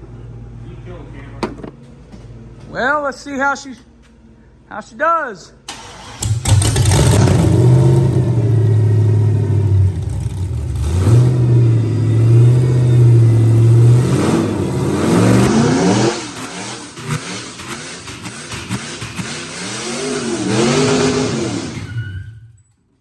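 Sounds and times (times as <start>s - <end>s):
engine revving hard: 5.8s - 22.0s
tires spinning: 5.8s - 22.6s.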